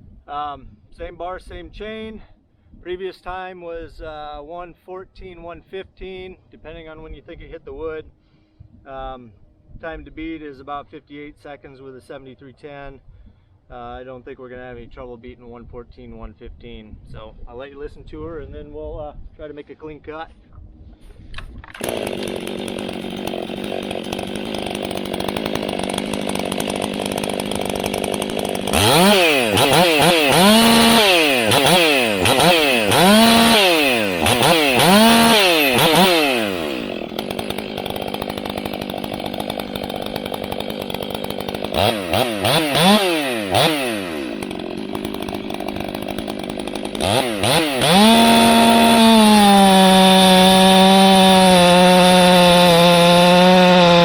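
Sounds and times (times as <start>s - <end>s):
chainsaw idling and revving: 21.7s - 54.0s.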